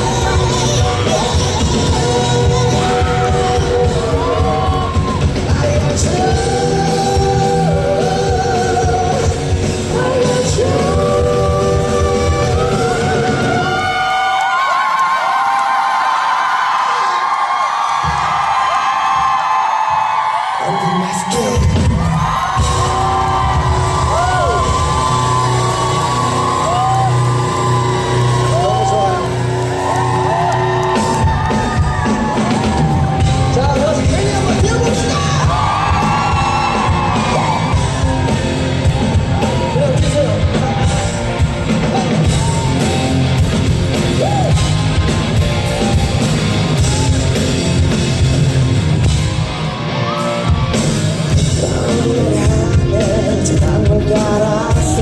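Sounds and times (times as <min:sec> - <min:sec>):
pop-rock band and singer performing: 0:00.0 - 0:14.8, 0:19.1 - 0:55.0
audience yells and whoops: 0:00.0 - 0:52.0
heavy driving beat: 0:27.8 - 0:55.0.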